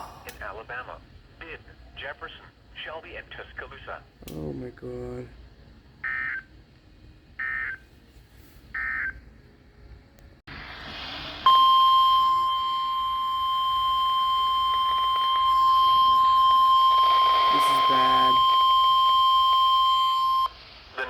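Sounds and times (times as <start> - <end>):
short data bursts: 14.8 - 20.3
steady loud alert tone: 15.3 - 18.6
radio hiss: 17.2 - 18.6, 20.8 - 21.0.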